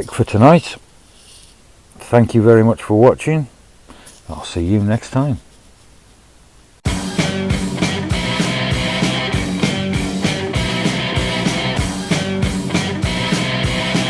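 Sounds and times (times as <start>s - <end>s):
rock music with electric guitar: 6.9s - 14.0s.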